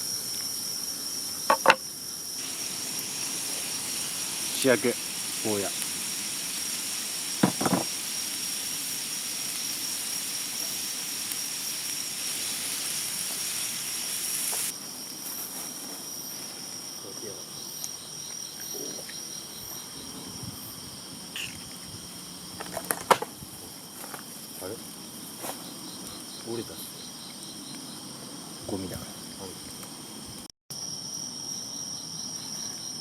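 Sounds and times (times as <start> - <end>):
food sizzling over fire: 0.0 - 31.2
insects chirping: 0.0 - 33.0
short rapid insect trill: 0.0 - 33.0
brief knock: 1.5 - 1.8, 7.4 - 7.9.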